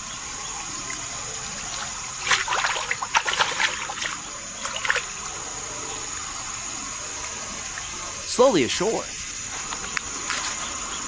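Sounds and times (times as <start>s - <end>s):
fish thrashing water splashing: 1.6s - 5.4s.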